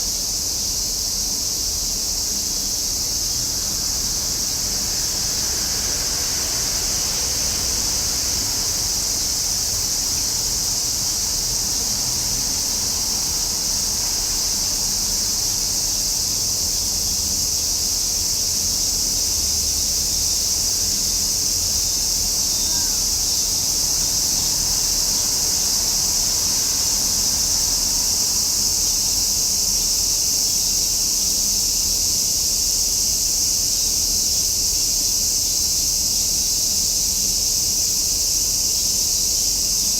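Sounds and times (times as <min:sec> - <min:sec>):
cicadas buzzing: 0:00.0 - 0:39.9.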